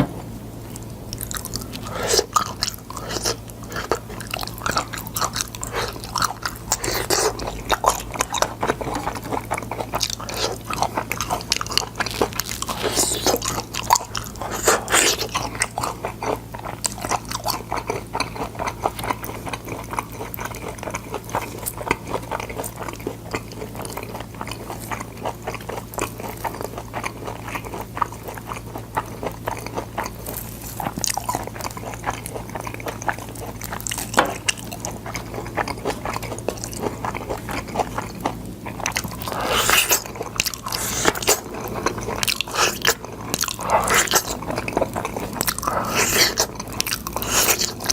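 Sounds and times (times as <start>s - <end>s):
steady low hum: 0.0s - 47.9s
chewing crunches: 0.7s - 47.9s.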